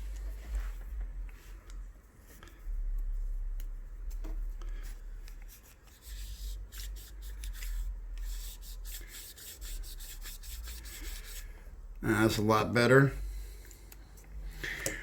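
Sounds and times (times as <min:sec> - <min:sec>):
cotton swab scratching in barrel: 0:03.0 - 0:11.6.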